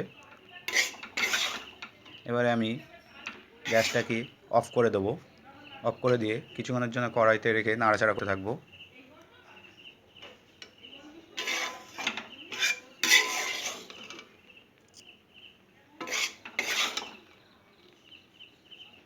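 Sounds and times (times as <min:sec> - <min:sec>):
spatula scraping a pan: 0:00.0 - 0:04.4, 0:10.2 - 0:14.3, 0:16.0 - 0:17.4.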